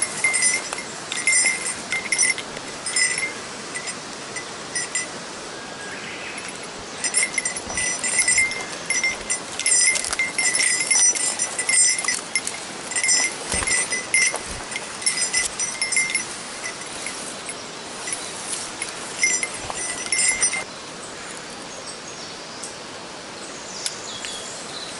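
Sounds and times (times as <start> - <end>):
small metal bell jingling: 0.0 - 5.2, 6.4 - 20.7
mountain stream rushing: 0.0 - 24.9.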